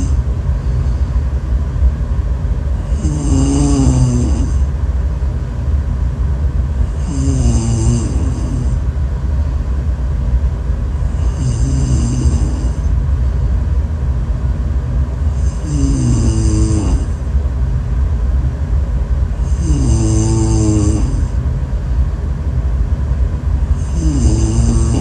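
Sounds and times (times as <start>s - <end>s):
person snoring: 0.0s - 1.1s, 2.8s - 4.7s, 6.8s - 8.8s, 11.0s - 12.9s, 15.3s - 17.2s, 19.4s - 21.4s, 23.7s - 25.0s.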